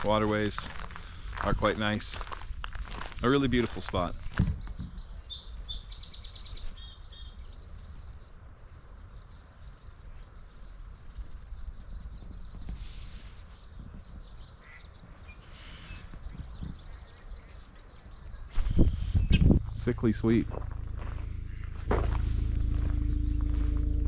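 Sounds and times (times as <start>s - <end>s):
steady low rumble: 0.0s - 4.4s, 18.5s - 24.0s
small birds chirping: 0.0s - 24.0s.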